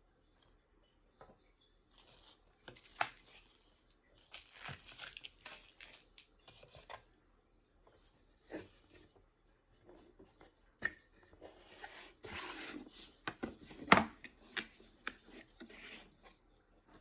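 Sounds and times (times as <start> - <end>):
packaging rustling: 2.0 - 6.8.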